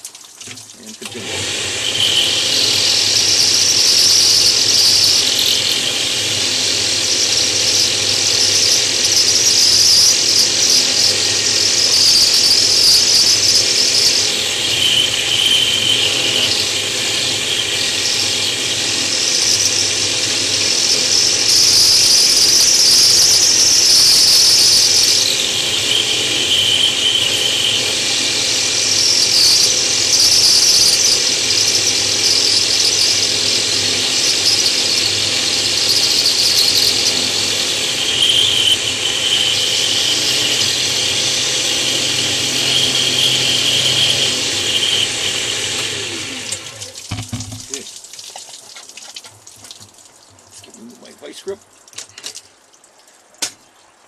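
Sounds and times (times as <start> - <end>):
router bit grinding stone: 1.0 - 47.8.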